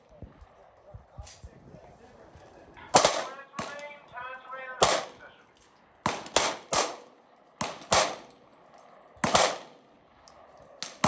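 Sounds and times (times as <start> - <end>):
gunshots with echo: 2.9 - 4.0, 4.8 - 5.3, 6.0 - 8.4, 9.2 - 9.9.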